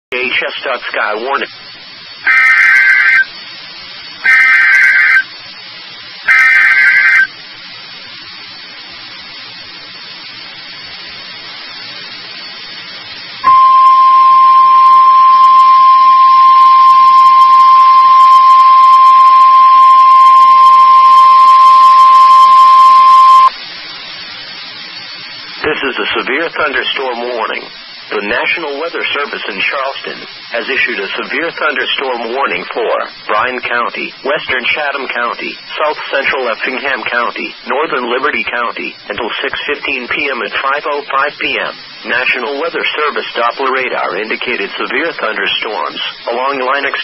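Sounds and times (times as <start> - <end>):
digital data bursts: 0.1 - 7.9, 9.2 - 23.6
radio hiss: 0.1 - 47.0
steady warning alarm tone: 2.3 - 3.4, 6.3 - 7.3, 13.4 - 23.6.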